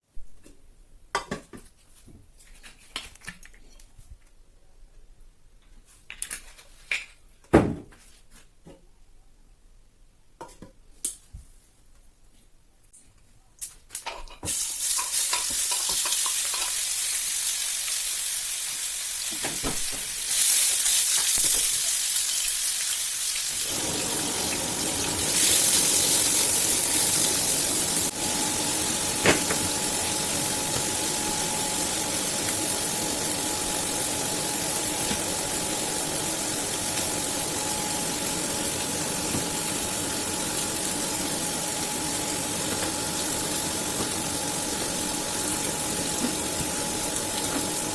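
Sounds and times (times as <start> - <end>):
food sizzling in a pan: 14.4 - 47.9.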